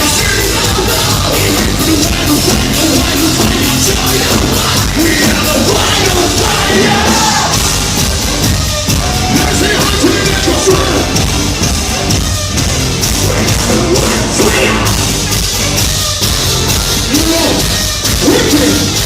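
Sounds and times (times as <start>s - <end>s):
shouted vocals: 0.0s - 8.0s, 8.8s - 12.1s, 13.2s - 15.1s
distorted guitars: 0.0s - 19.0s
heavy drums: 0.0s - 19.0s
live metal band playing: 0.0s - 19.0s.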